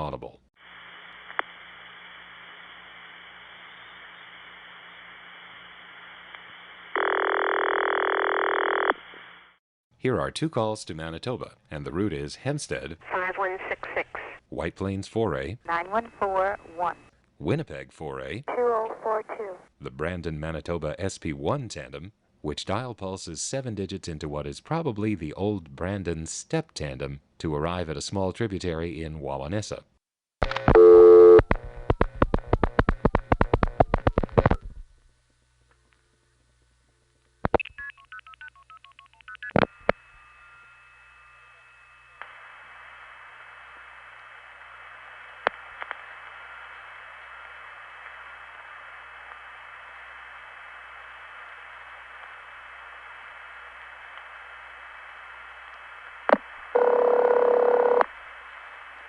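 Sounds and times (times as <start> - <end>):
telephone line hiss: 0.6 - 9.6, 39.5 - 49.9, 56.2 - 58.7
telephone ring: 56.8 - 58.1.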